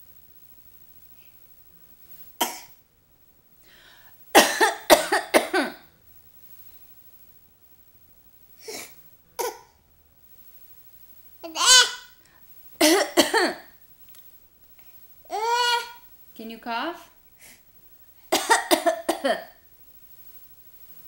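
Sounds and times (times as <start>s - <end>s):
baby giving pretend coughs: 4.4s - 5.8s, 18.4s - 19.5s.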